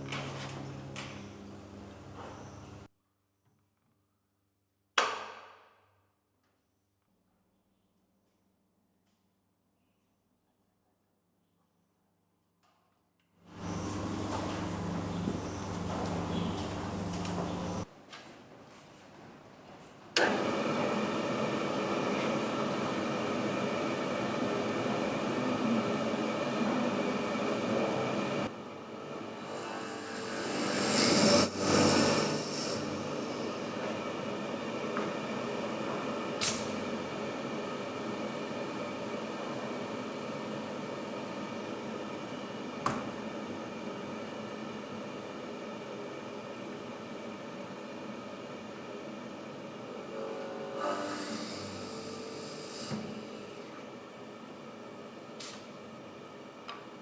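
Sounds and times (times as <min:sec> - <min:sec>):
boring machine humming: 0:00.0 - 0:02.9, 0:13.5 - 0:17.9, 0:20.1 - 0:37.9.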